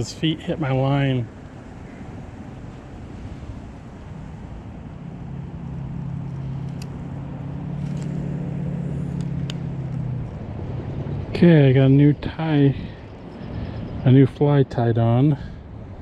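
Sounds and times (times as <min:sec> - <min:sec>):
passing vehicle engine hum: 0:00.0 - 0:16.0
traffic background rush: 0:00.0 - 0:16.0.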